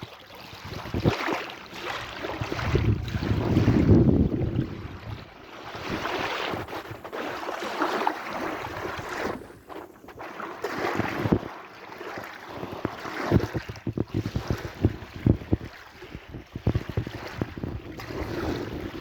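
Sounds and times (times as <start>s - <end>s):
wind buffeting microphone: 0.6s - 1.3s, 2.0s - 7.4s, 12.6s - 19.0s
sea waves washing in: 0.8s - 13.6s, 14.2s - 19.0s.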